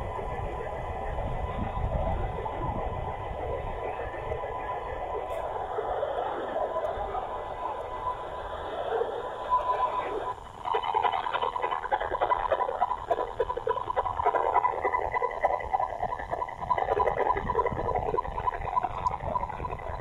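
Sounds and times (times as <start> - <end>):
thin steady whistle: 0.0 - 11.1
warbling bubbling radio interference: 0.0 - 20.0.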